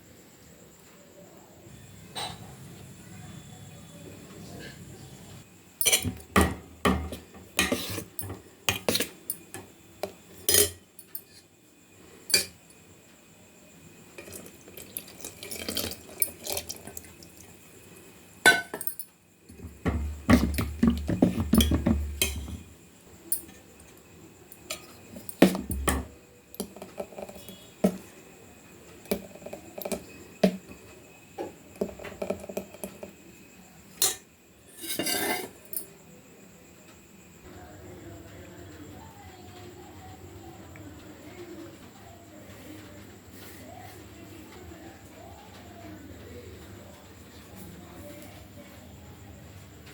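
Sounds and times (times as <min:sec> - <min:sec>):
kitchen utensils clinking: 0:05.8 - 0:09.7, 0:10.4 - 0:11.5, 0:12.3 - 0:12.7, 0:14.2 - 0:17.4, 0:18.4 - 0:22.7, 0:24.5 - 0:28.0, 0:34.0 - 0:35.9.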